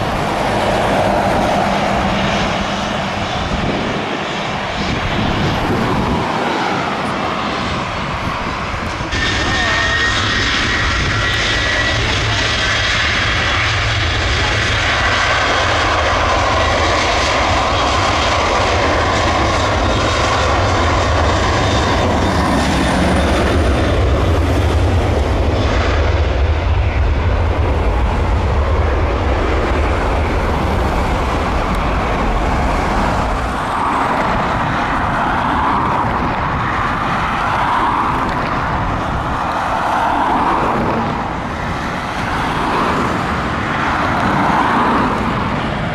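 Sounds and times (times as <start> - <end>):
airliner engines running loudly: 0.0 - 45.9.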